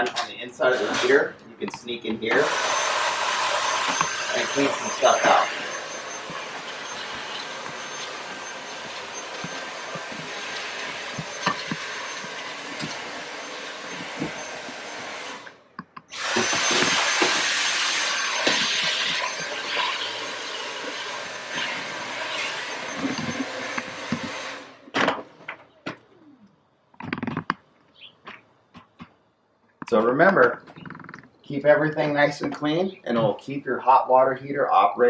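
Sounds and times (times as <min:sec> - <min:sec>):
vacuum cleaner whistling: 0:02.3 - 0:24.8
knocks and clatters: 0:26.9 - 0:29.2.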